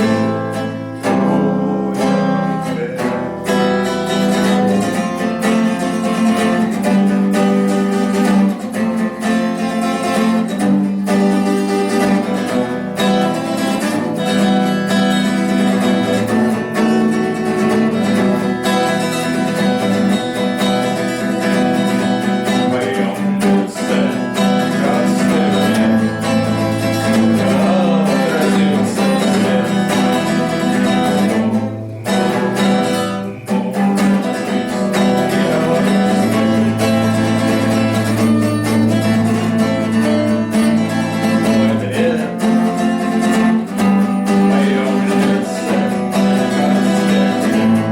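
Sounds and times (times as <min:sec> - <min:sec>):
person singing: 0:00.0 - 0:09.2, 0:11.2 - 0:47.9
acoustic guitar: 0:00.0 - 0:47.9.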